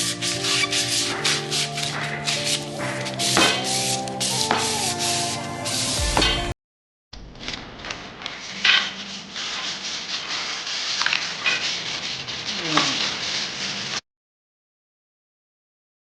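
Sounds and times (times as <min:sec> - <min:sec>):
rubbing and scraping: 0:00.0 - 0:06.5, 0:07.8 - 0:14.0.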